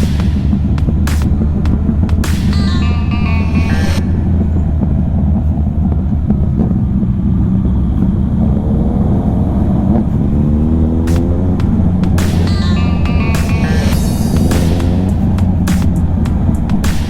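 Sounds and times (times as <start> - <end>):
motorcycle engine accelerating: 4.2 - 16.9.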